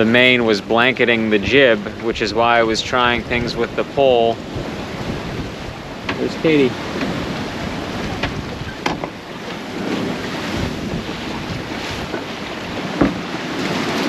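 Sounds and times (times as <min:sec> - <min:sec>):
waves rushing: 0:00.0 - 0:14.0
wind buffeting microphone: 0:00.0 - 0:14.0
sharp knocks: 0:13.0 - 0:13.2.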